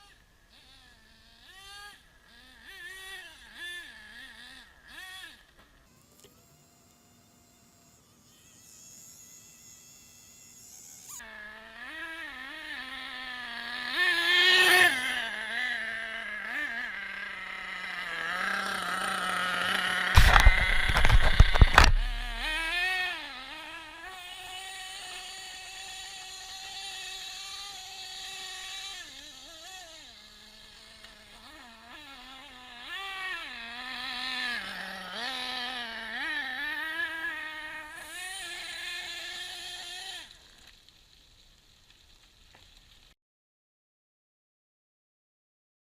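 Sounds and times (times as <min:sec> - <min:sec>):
nitro engine revving: 0:11.1 - 0:40.3.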